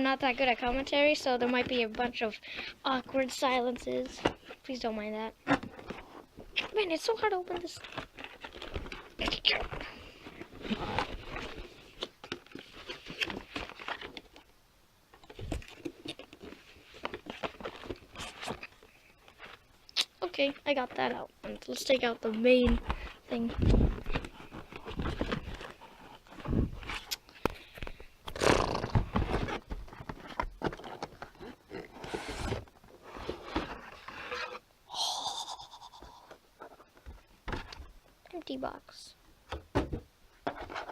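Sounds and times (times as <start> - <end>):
packaging rustling: 7.4 - 14.5, 22.3 - 34.6.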